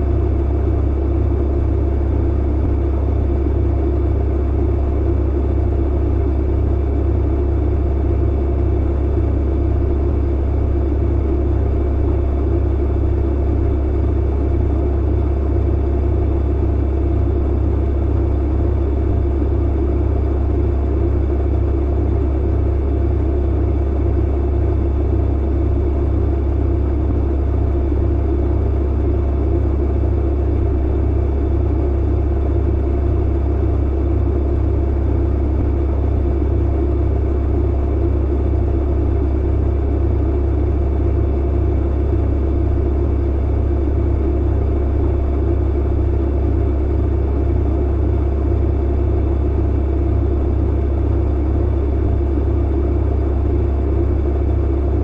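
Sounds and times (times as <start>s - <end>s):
clothes dryer running: 11.0s - 39.5s.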